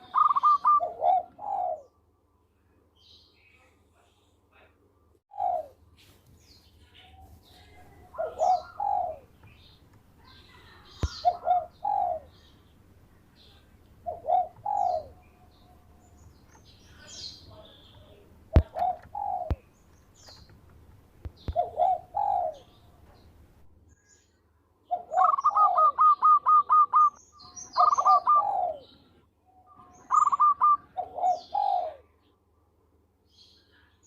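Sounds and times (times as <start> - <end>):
dove cooing: 0.0 - 2.0, 5.3 - 5.8, 7.2 - 9.4, 11.0 - 12.4, 14.0 - 15.8, 18.5 - 19.6, 21.4 - 23.0, 24.9 - 27.2, 27.8 - 29.0, 29.7 - 32.2
small birds chirping: 0.0 - 34.0.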